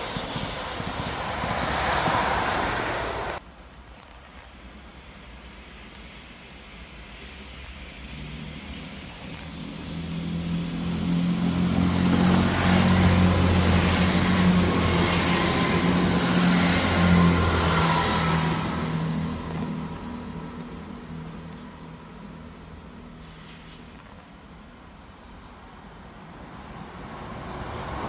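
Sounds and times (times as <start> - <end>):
large vehicle passing by: 0.0 - 3.4, 7.5 - 23.9.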